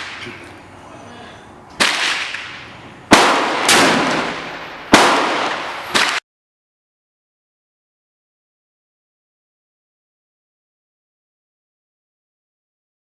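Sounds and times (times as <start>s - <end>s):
gunshots echoing: 1.8s - 6.2s.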